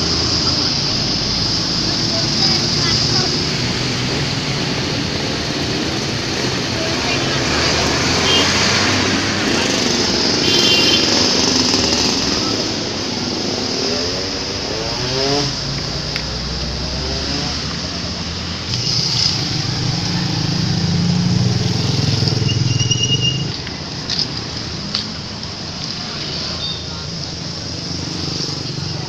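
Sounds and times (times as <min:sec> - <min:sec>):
engine accelerating: 0:00.0 - 0:29.0
vehicles passing: 0:00.0 - 0:29.0
heavy low engine passing: 0:11.0 - 0:29.0.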